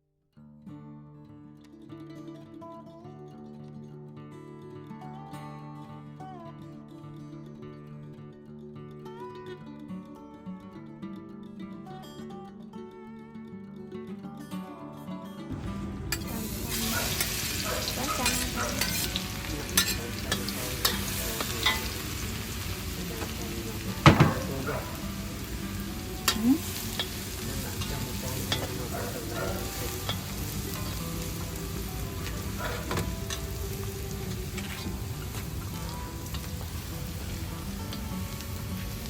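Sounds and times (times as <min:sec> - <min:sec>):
beef sizzling in a pan: 0:16.1 - 0:39.0
utensil scraping a pan: 0:17.0 - 0:22.0.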